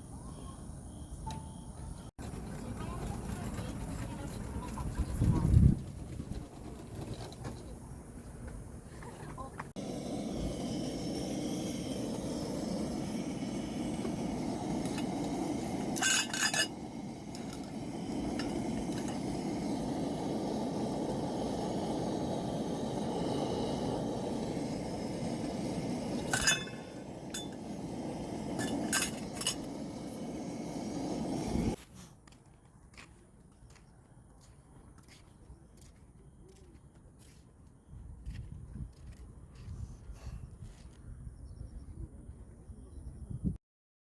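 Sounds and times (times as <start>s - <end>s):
tableware clinking: 14.9s - 17.6s, 26.2s - 27.8s, 28.6s - 29.8s.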